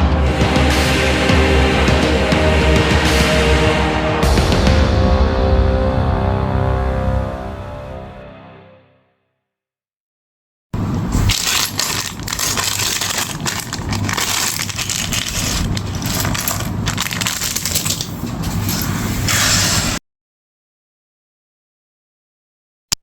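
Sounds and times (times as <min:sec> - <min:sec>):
plastic crackling and rustling: 0:10.8 - 0:20.0.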